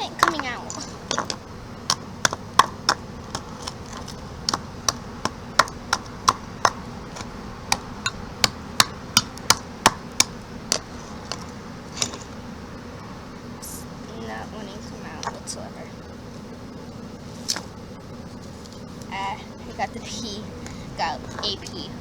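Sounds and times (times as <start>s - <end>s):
ice block being knocked: 0.2s - 11.4s.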